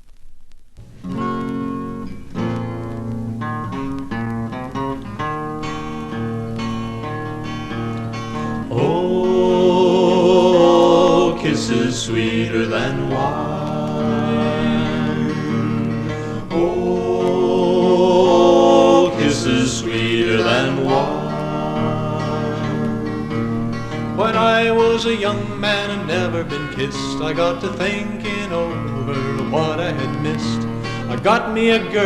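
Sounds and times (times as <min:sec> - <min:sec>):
acoustic guitar picked and strummed: 0:00.8 - 0:32.0
person singing with vibrato: 0:08.6 - 0:32.0.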